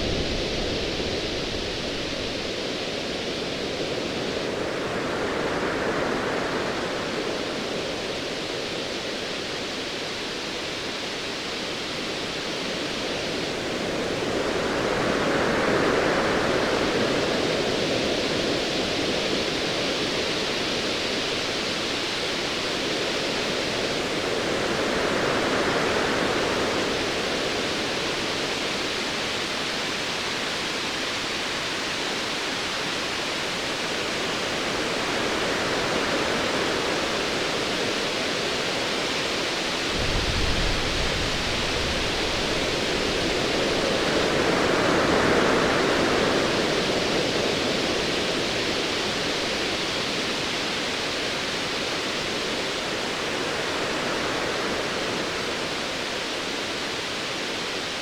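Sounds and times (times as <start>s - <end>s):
ocean surf washing: 33.9s - 58.0s.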